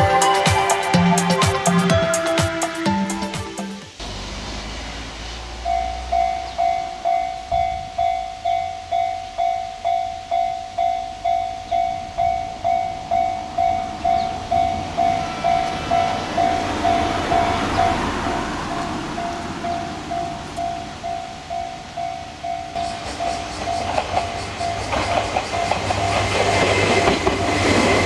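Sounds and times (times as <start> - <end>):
level-crossing warning bell: 0.0 - 2.4, 5.5 - 28.0
approaching train running noise: 0.0 - 28.0.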